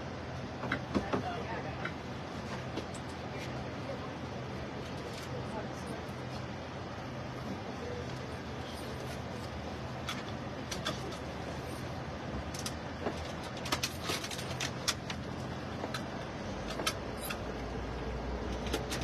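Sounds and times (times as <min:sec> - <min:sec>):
vehicle engine humming: 0:00.0 - 0:19.0
sharp clicks and rattles: 0:12.4 - 0:17.6, 0:18.4 - 0:19.0.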